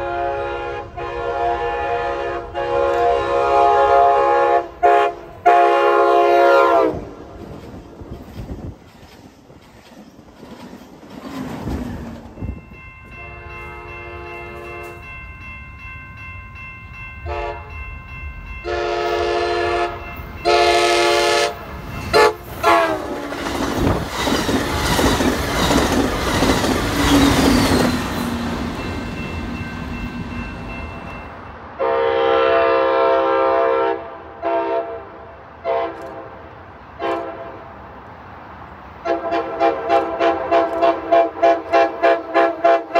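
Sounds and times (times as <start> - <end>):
train horn blasts: 0.0 - 7.2, 13.1 - 15.2, 17.2 - 17.8, 18.6 - 23.3, 31.8 - 37.8, 39.0 - 42.9
train wheels clacking over rail joints: 7.1 - 12.8, 22.0 - 30.0.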